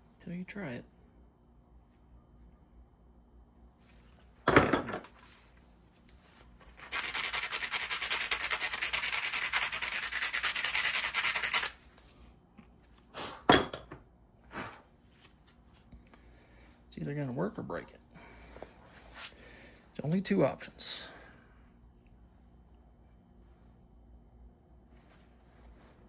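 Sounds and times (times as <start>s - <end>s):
stone-on-stone scraping: 6.6s - 11.8s.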